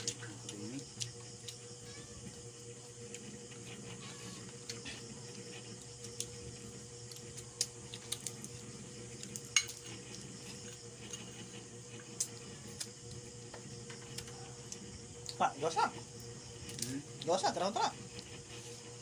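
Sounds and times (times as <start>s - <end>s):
cutlery clinking against dishes: 9.5s - 9.8s.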